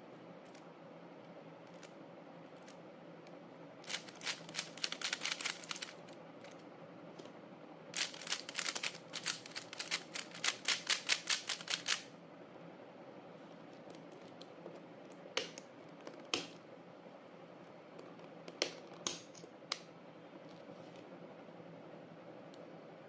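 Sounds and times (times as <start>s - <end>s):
speed cube turning clicks: 1.7s - 1.9s, 3.8s - 6.6s, 8.0s - 12.1s.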